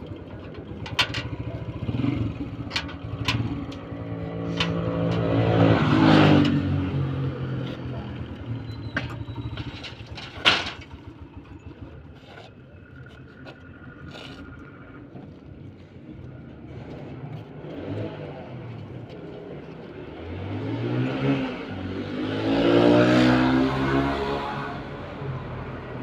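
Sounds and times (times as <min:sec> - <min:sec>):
vehicle engine passing: 0:01.3 - 0:10.1, 0:19.8 - 0:26.0.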